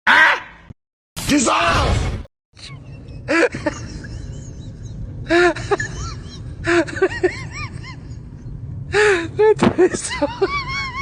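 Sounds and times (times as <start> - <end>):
steady low hum: 2.6 - 11.0.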